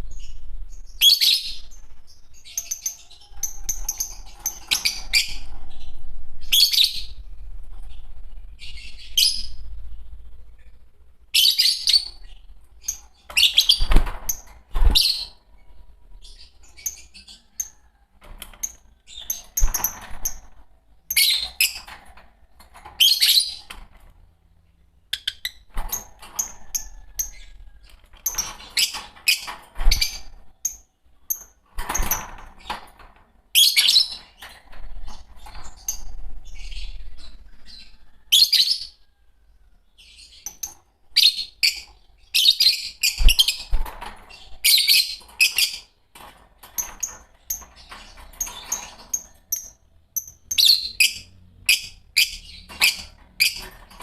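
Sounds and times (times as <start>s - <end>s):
lovebirds chirping shrilly: 11.4s - 17.9s, 23.0s - 23.7s, 25.2s - 32.8s, 33.6s - 39.0s, 40.0s - 46.0s, 47.1s - 54.0s.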